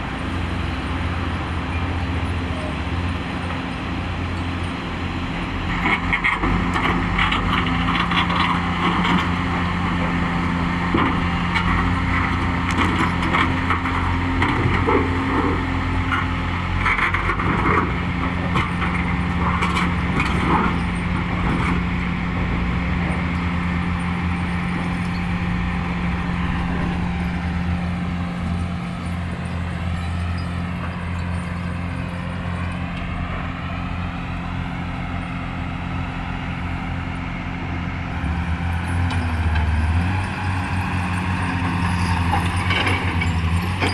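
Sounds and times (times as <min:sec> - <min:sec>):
diesel engine running: 0:00.0 - 0:43.9
rock and metal clanking: 0:10.8 - 0:33.1.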